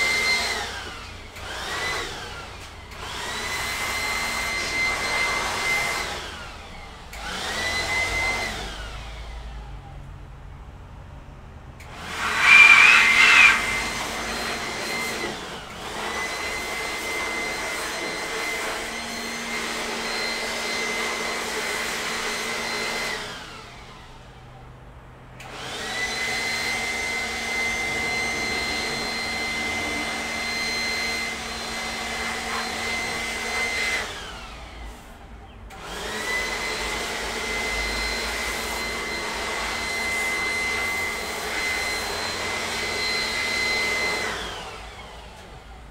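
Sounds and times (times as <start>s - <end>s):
air blower whining: 0.0s - 9.7s, 11.8s - 45.9s.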